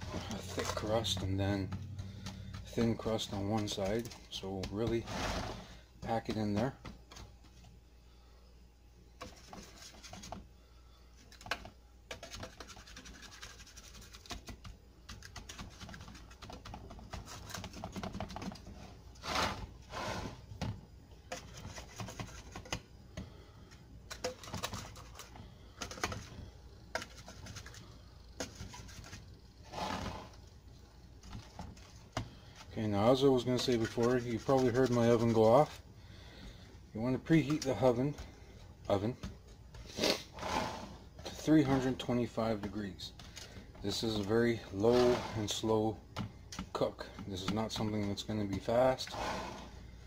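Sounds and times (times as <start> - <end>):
cup tamping crumbs in pan: 32.4 - 35.7.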